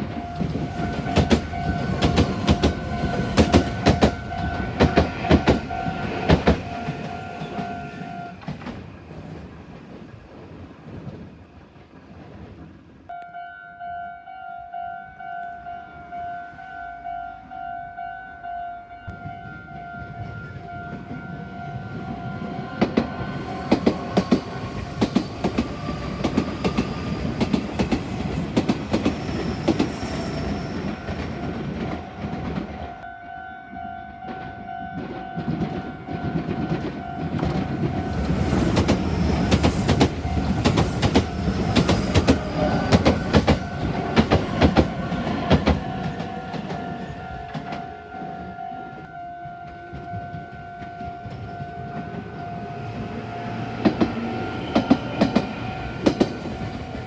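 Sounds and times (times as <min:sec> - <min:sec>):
level crossing warning bell: 0:00.0 - 0:08.4, 0:13.1 - 0:25.4, 0:39.4 - 0:53.7
wheels clacking over rail joints: 0:00.0 - 0:11.3, 0:22.3 - 0:33.0, 0:35.0 - 0:48.3, 0:49.9 - 0:57.0
train rumbling: 0:00.0 - 0:13.2, 0:19.1 - 0:33.1, 0:33.7 - 0:57.0.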